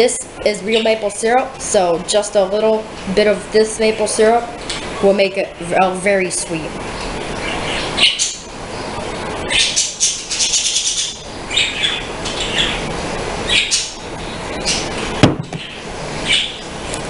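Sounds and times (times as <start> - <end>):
bird chirping: 7.0 - 12.9, 13.5 - 14.9, 15.6 - 16.7
sharp knock: 15.2 - 15.7.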